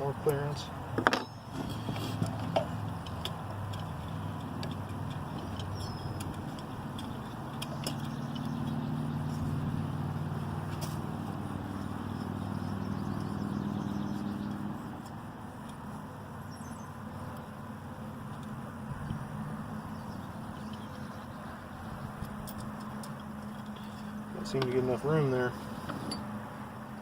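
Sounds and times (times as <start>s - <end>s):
low engine hum: 0.0s - 27.0s
clicks of nut and tools: 1.0s - 8.8s, 22.2s - 24.8s.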